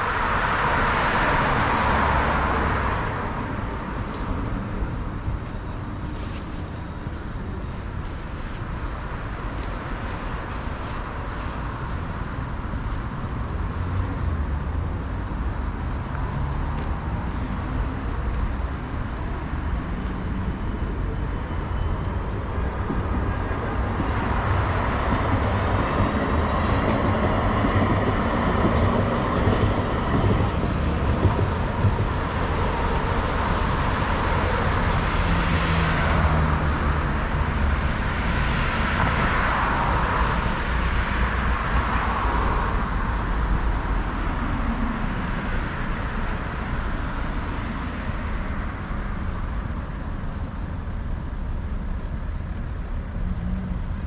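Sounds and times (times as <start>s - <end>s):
low rumble of traffic: 0.0s - 54.0s
vehicles passing: 0.0s - 54.0s.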